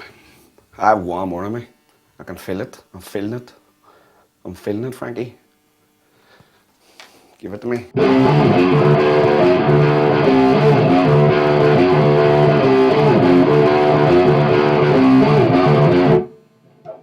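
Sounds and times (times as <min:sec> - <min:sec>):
electric guitar chords: 0:07.9 - 0:17.0.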